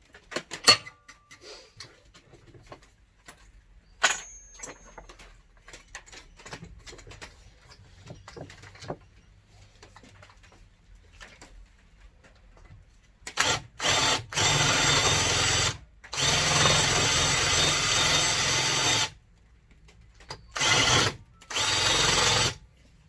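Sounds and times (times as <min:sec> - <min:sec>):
sharp metallic clink: 0:00.6 - 0:01.2, 0:04.0 - 0:05.1.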